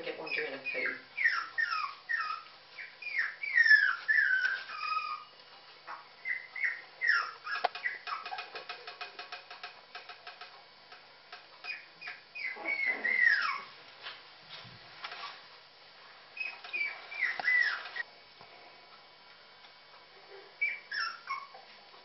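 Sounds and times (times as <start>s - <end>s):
puppies whimpering: 0.2s - 9.0s, 11.7s - 13.8s, 16.4s - 18.0s, 20.6s - 21.8s.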